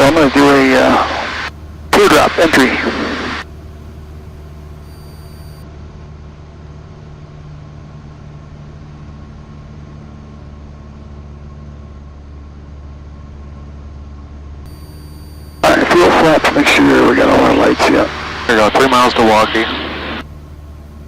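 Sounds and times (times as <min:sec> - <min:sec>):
propeller plane engine droning: 0:00.0 - 0:21.0.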